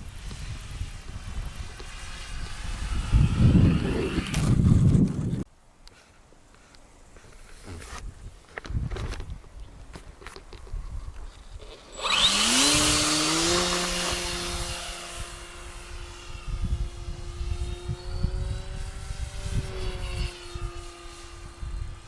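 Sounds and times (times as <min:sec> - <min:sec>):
model plane motor whine: 0:00.0 - 0:05.4, 0:11.3 - 0:22.0.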